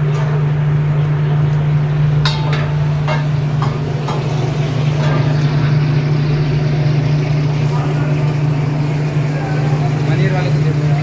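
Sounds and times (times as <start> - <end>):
kitchen equipment humming: 0.0 - 11.0
metal utensil clinking on pan: 2.2 - 4.3.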